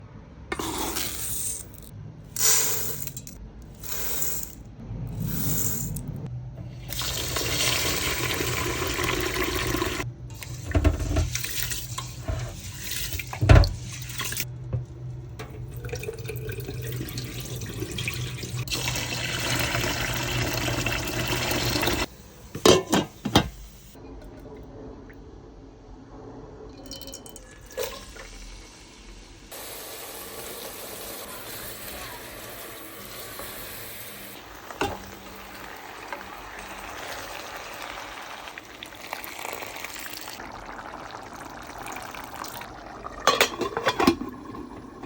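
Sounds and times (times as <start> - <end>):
tap water running into sink: 6.9 - 14.4, 15.4 - 22.1.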